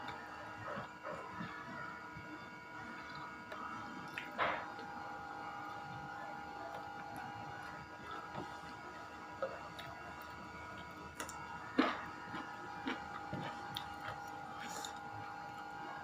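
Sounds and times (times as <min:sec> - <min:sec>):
steady hum: 0:00.0 - 0:16.0
crunching bites of vegetables: 0:09.7 - 0:15.4.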